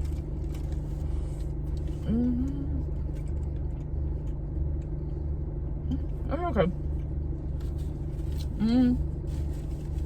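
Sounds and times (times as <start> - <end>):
person humming: 2.0 - 2.8, 8.6 - 9.0.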